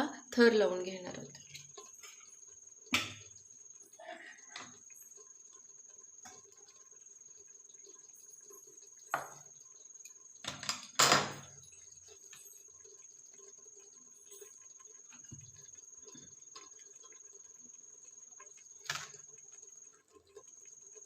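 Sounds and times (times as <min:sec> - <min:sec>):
spoon knocking against pot: 0:09.1 - 0:09.5.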